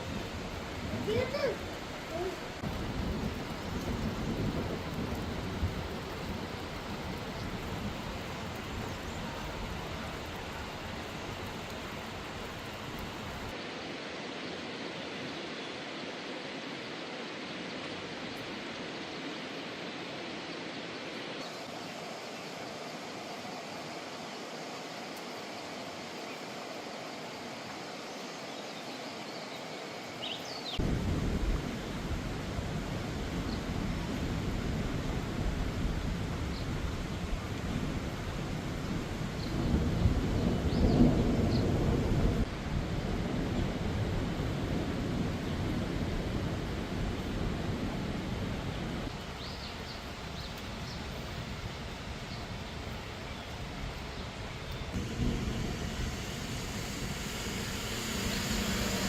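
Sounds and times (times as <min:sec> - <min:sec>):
floodwater rushing: 0:00.0 - 0:39.4, 0:45.9 - 0:59.0.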